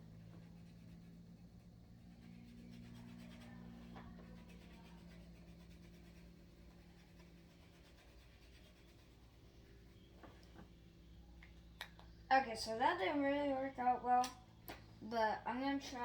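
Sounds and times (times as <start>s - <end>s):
low steady hum: 0.0s - 16.0s
marker scratching on plastic: 0.1s - 9.8s.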